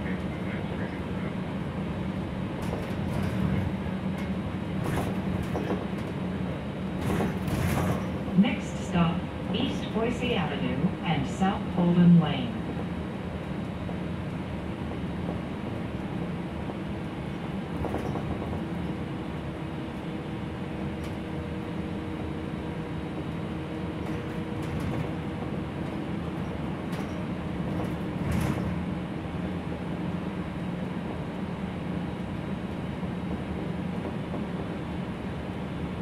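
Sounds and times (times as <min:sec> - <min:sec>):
engine and road noise drone: 0:00.0 - 0:36.0
body rattles and knocks: 0:02.5 - 0:08.4, 0:15.0 - 0:19.3, 0:24.0 - 0:28.9.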